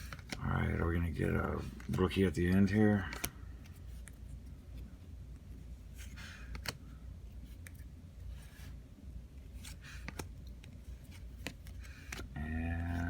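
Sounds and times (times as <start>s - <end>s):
cards rustling sliding: 0.0s - 12.3s
low steady hum: 0.0s - 13.0s
cards flicking: 6.3s - 6.8s, 9.6s - 12.3s.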